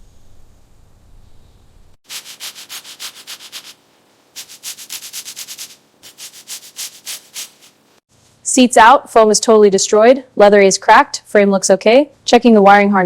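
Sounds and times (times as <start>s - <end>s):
quick rubbing strokes: 2.0s - 8.4s.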